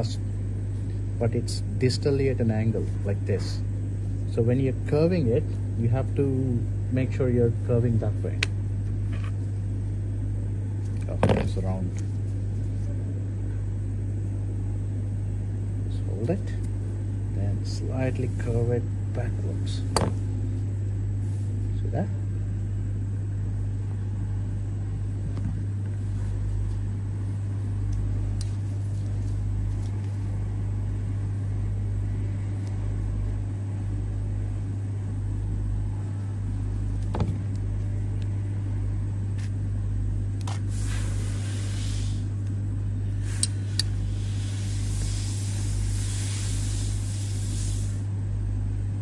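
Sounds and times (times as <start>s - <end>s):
low hum with rumble: 0.0s - 49.0s
short hiss: 40.5s - 42.3s, 43.2s - 48.1s.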